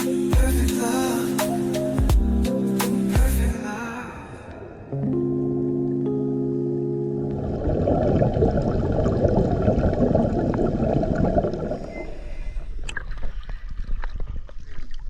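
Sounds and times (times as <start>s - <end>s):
water sloshing and gurgling: 7.2s - 15.0s.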